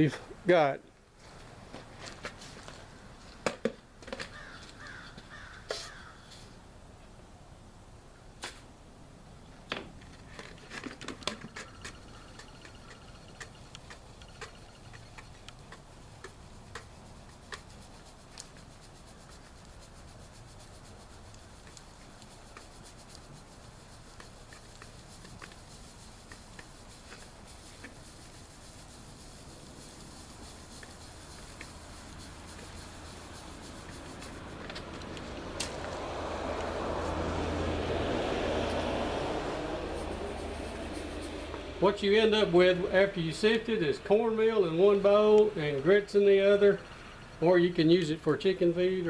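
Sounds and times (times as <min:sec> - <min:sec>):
clicks and knocks of handling: 0:09.7 - 0:16.9
short calls: 0:11.3 - 0:43.6.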